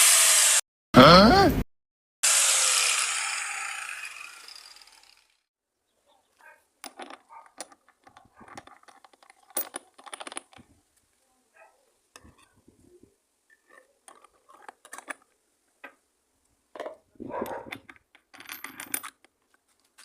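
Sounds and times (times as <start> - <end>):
angle grinder winding down: 0.0 - 0.6, 2.2 - 5.4
metal parts clinking: 6.8 - 10.6, 17.7 - 19.3.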